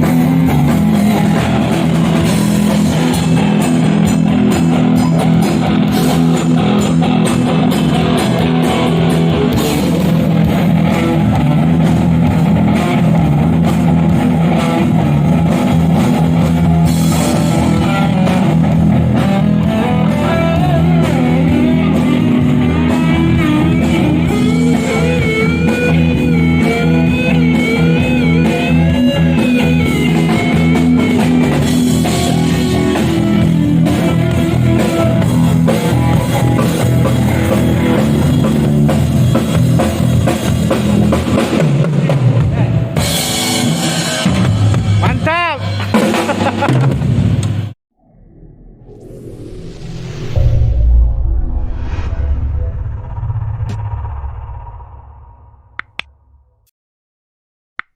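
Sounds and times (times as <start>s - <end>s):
bending lead guitar line: 0.0s - 44.9s
live rock band through pa: 0.0s - 47.8s.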